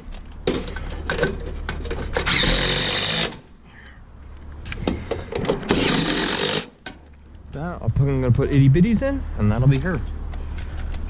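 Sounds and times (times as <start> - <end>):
power drill whine: 2.2 - 3.4, 5.7 - 6.7.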